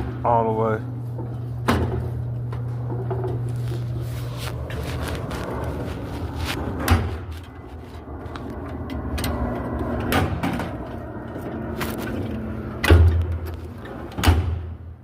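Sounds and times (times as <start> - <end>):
steady low hum: 0.0 - 15.0
metal drawers sliding shut: 12.7 - 14.8.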